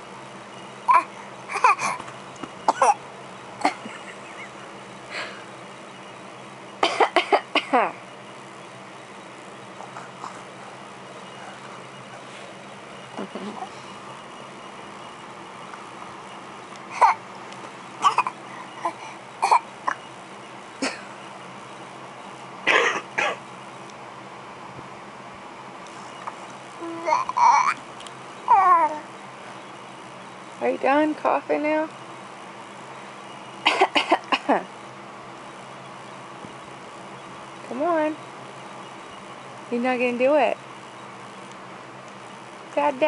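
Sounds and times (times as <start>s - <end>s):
baby coughing: 0.9s - 2.0s, 2.7s - 3.0s, 6.8s - 7.8s, 16.9s - 17.2s, 18.0s - 20.0s, 20.8s - 21.1s, 22.7s - 23.4s, 27.0s - 27.8s, 33.7s - 34.5s.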